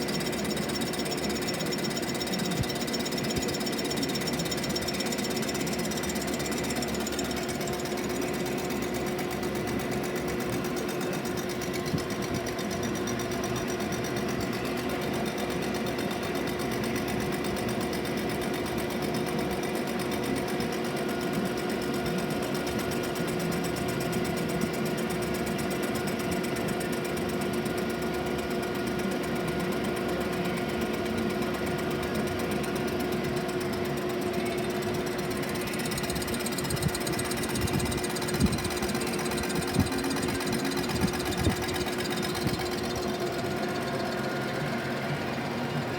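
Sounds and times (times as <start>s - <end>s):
boring mill machining metal: 0.0s - 10.3s, 34.3s - 45.9s.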